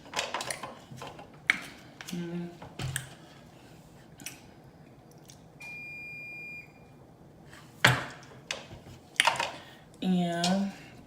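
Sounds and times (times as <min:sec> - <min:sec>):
electronic beep: 0:05.6 - 0:06.8.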